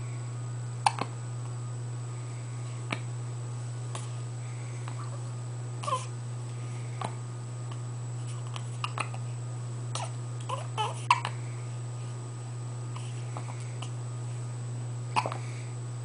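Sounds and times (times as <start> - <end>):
person hiccuping: 9.9 - 11.3, 15.2 - 15.4.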